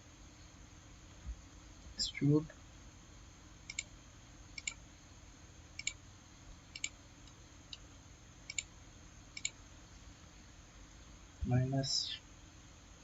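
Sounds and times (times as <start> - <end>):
computer mouse clicking: 3.7 - 3.9, 4.6 - 4.8, 5.8 - 6.0, 6.7 - 7.8, 8.5 - 8.7, 9.4 - 9.6.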